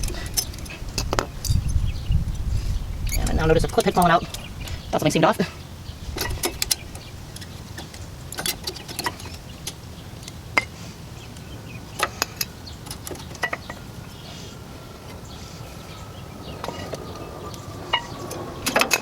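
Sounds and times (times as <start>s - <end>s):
light metal clicks and clinks: 0.0s - 2.5s, 6.2s - 10.8s.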